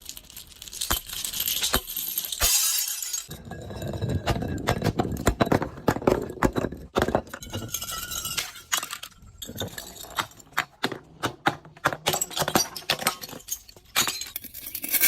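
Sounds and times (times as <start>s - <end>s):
glass shards crunching: 0.0s - 4.1s, 7.4s - 10.0s, 12.6s - 15.0s
glass shattering: 0.0s - 5.7s, 6.4s - 10.4s, 12.0s - 15.0s
glass bottle cracking: 0.0s - 10.5s, 12.1s - 15.0s.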